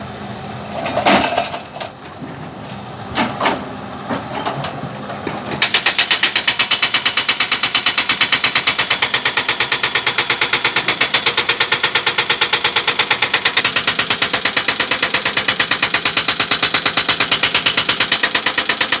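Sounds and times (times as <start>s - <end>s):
jackhammer pounding on stone: 5.6s - 19.0s.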